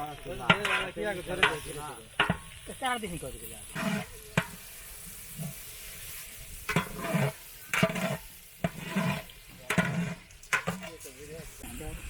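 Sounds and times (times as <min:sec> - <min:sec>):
food sizzling in hot oil: 0:00.0 - 0:12.0
stirring scrapes in pot: 0:00.1 - 0:11.8.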